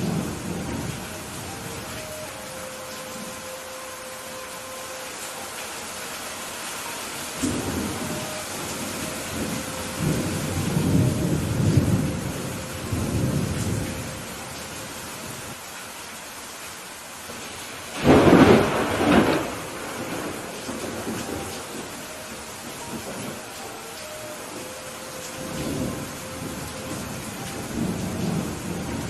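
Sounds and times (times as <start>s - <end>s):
low rolling thunder: 0.0s - 2.0s, 7.4s - 14.6s, 17.3s - 29.0s
steady rain: 0.0s - 29.0s
sharp thunderclap: 18.0s - 21.7s.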